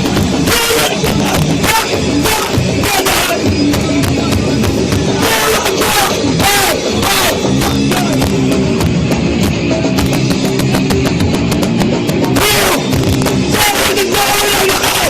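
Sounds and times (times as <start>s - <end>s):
distorted guitars: 0.0s - 15.0s
pounding drums and cymbals: 0.0s - 15.0s
shouted vocal: 0.4s - 3.5s, 5.2s - 8.2s, 12.4s - 12.9s, 13.5s - 15.0s.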